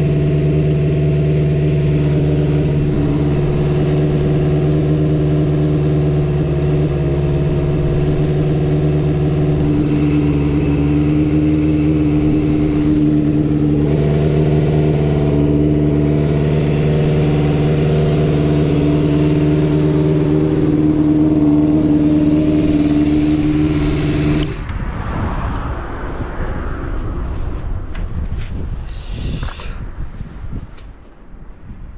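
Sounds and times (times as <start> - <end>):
motorcycle engine idling: 0.0 - 24.6.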